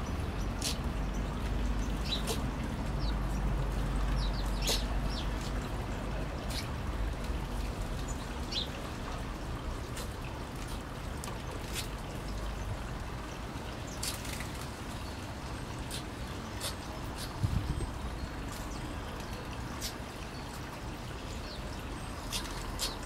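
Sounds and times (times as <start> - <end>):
pigeon making sneeze-like sounds: 4.6 - 4.9.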